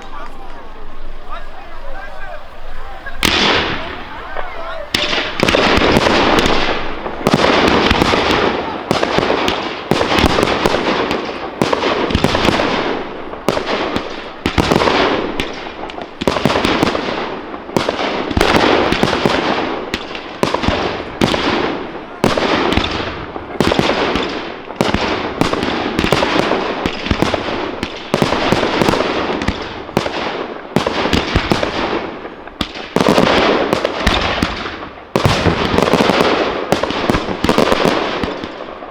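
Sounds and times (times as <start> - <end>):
fireworks bangs: 0.0 - 38.9
fireworks crackling: 0.0 - 38.9.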